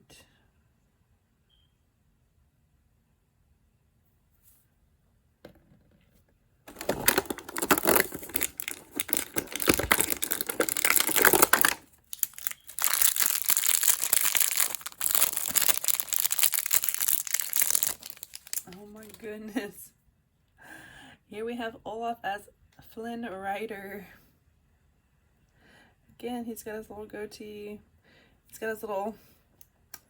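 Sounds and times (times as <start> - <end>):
plastic bag tearing and crinkling: 6.7 - 19.2.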